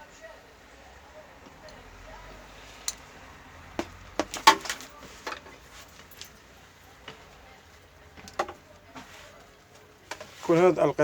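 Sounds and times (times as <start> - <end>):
light clicks and knocks handling parts: 2.7 - 10.6.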